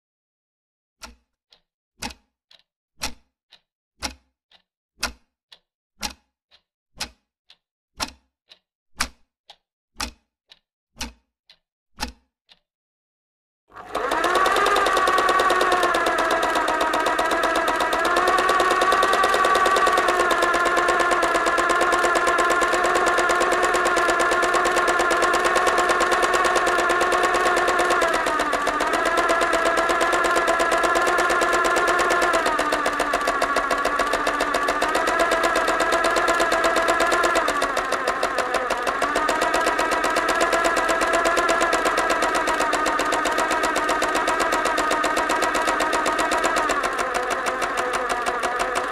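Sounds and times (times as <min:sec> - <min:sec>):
electric sewing machine running: 0:13.7 - 0:48.9.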